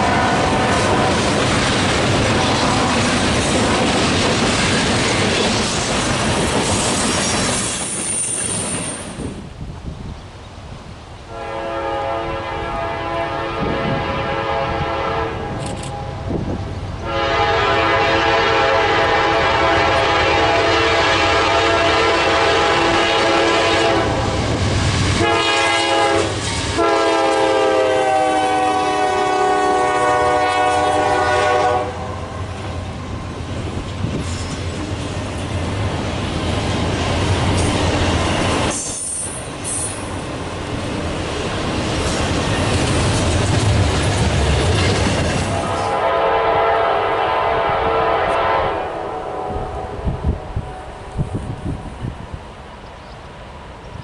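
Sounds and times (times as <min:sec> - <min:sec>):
locomotive air horn blasts: 0:00.0 - 0:01.2, 0:11.3 - 0:16.4, 0:17.0 - 0:24.3, 0:25.2 - 0:32.3, 0:45.5 - 0:51.2
train wheel clatter: 0:00.7 - 0:09.4, 0:32.6 - 0:45.9.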